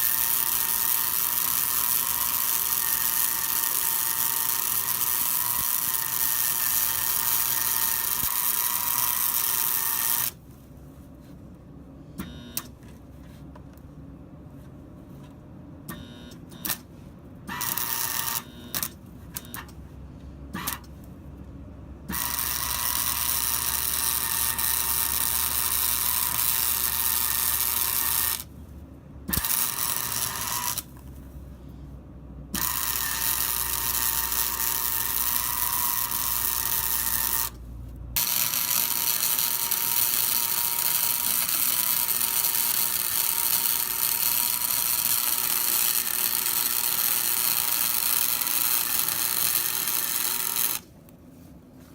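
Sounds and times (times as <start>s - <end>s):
arc welder crackling and buzzing: 0.0s - 10.4s, 17.5s - 19.7s, 20.6s - 21.0s, 22.0s - 28.5s, 29.3s - 31.2s, 32.6s - 37.6s, 38.2s - 51.2s.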